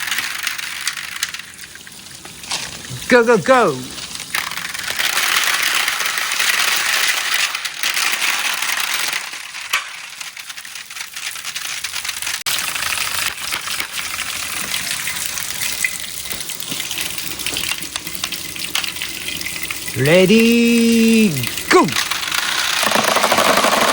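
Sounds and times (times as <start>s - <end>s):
water gushing: 0.0s - 6.6s, 12.1s - 23.9s
marbles clinking on track: 0.0s - 23.9s.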